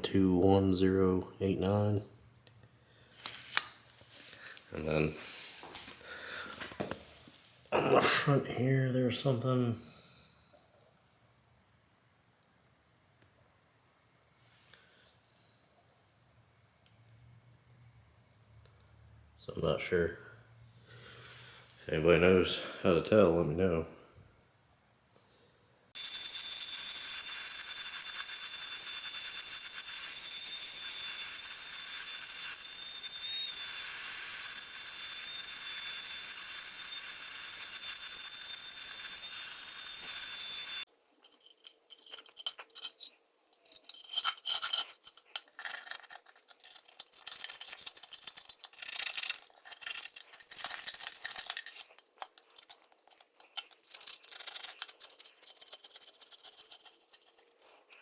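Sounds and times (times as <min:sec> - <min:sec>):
scrubbing and scraping on metal: 0:41.2 - 0:57.6.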